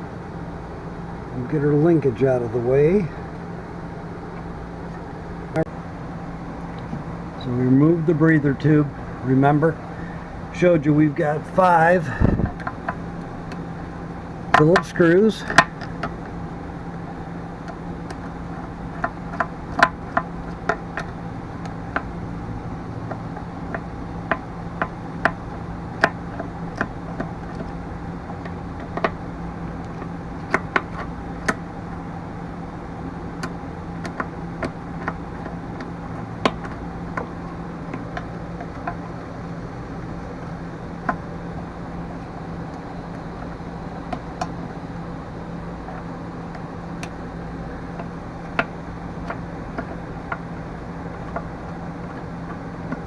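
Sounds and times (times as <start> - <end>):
steady low hum: 0.0 - 53.0
screwdriver clicking and tapping: 19.0 - 22.1, 28.8 - 29.2, 33.4 - 37.3.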